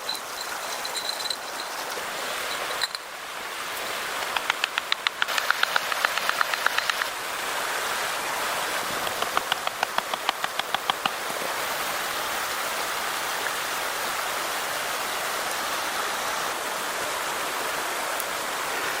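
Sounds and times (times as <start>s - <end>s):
rushing water noise: 0.0s - 19.0s
rapid sharp ticks: 4.2s - 7.1s, 9.0s - 11.2s.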